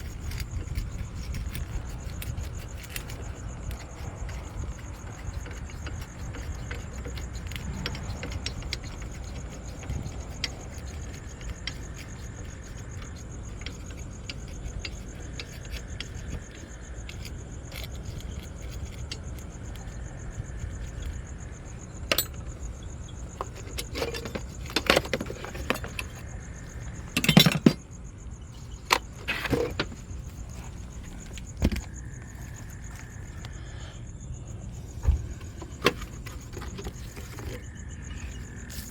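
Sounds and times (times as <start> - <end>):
insects chirping: 0.0 - 38.9
metallic clinks and knocks: 22.0 - 28.0.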